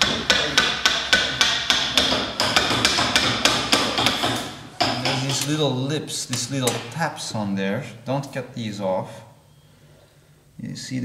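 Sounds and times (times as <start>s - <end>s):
hammer striking chisel: 0.0s - 5.7s, 6.3s - 7.0s.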